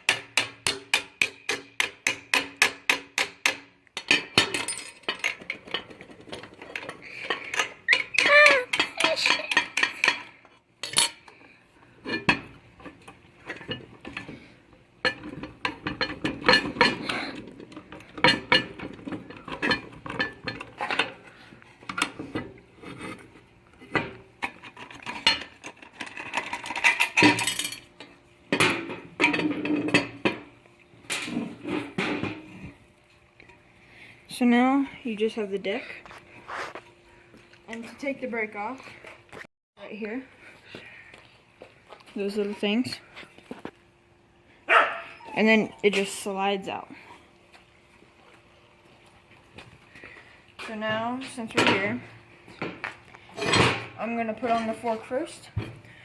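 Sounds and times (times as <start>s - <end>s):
metal tools clinking and rattling: 4.0s - 11.3s, 15.0s - 21.2s, 24.0s - 27.9s.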